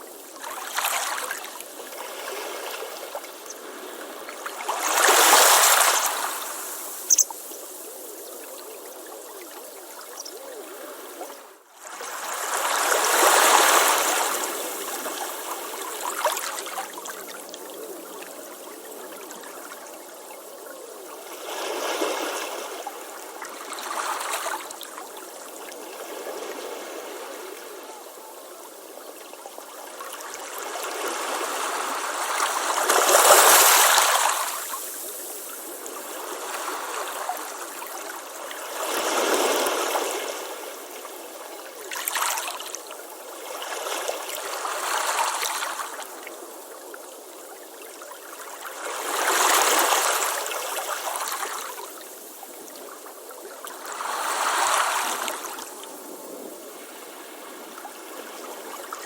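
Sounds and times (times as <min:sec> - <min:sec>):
ocean waves washing onto beach: 0:00.0 - 0:19.0.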